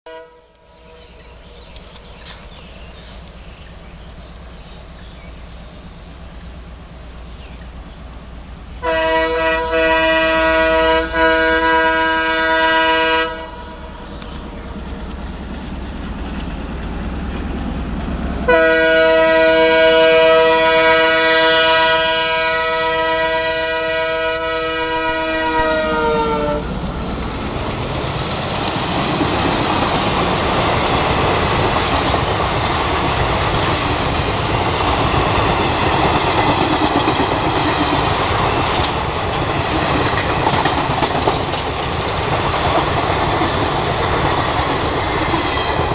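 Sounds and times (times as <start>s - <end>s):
multi-note train horn blasts: 0.1s - 1.3s, 8.8s - 14.1s, 18.4s - 26.9s
locomotive engine rumble: 0.5s - 45.9s
wheels clattering on rails: 14.0s - 18.5s, 25.4s - 45.9s.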